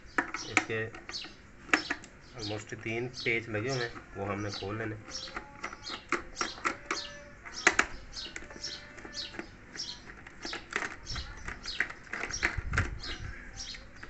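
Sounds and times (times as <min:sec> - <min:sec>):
birds chirping: 0:00.0 - 0:14.0
sharp clicks: 0:03.7 - 0:14.0.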